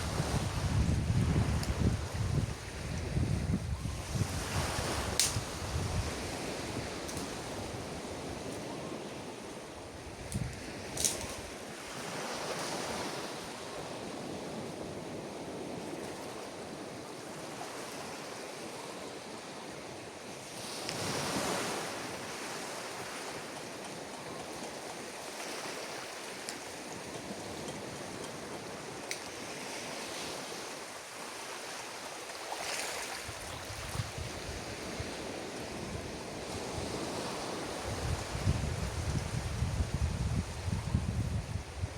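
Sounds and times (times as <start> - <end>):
ocean waves on beach: 0.0 - 3.4
wind rumble on microphone: 0.0 - 8.8, 9.9 - 11.6, 33.1 - 41.9.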